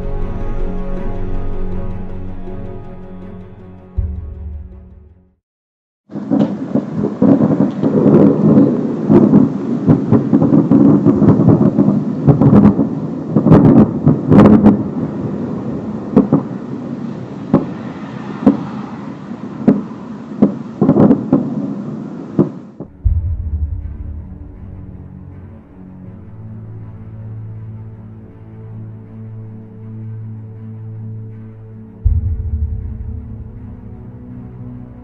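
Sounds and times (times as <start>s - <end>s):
loud rumbling with cracks and pops: 6.1s - 15.4s, 16.0s - 16.5s, 20.4s - 21.6s.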